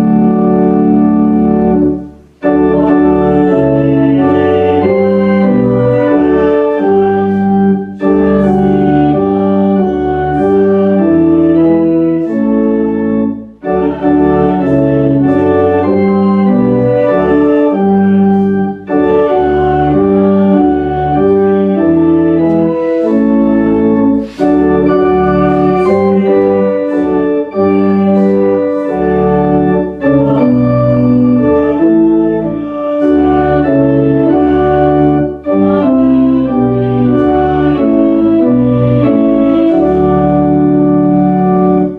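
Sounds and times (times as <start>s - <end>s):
organ playing a hymn: 0.0s - 41.9s.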